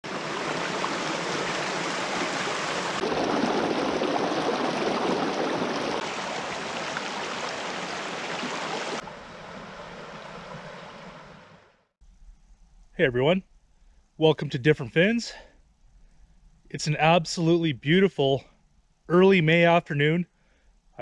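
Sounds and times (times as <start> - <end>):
running water rushing: 0.0 - 11.7.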